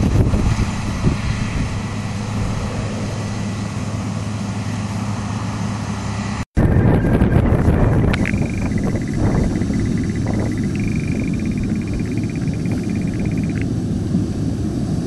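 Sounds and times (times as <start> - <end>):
farm machinery engine droning: 0.0 - 15.0.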